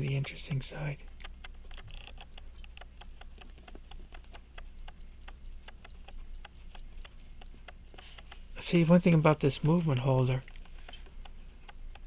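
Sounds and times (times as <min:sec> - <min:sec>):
pocket watch ticking: 0:00.0 - 0:12.0.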